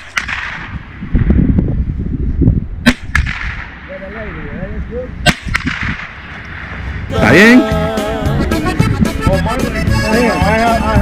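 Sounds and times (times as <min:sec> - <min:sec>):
gunshots: 0:00.0 - 0:00.8, 0:02.8 - 0:03.9, 0:05.2 - 0:06.7.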